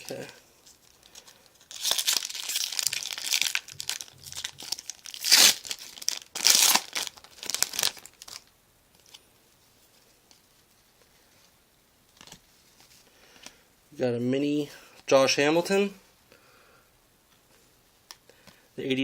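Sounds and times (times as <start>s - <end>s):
wrapper tearing and crinkling: 0.9s - 9.1s.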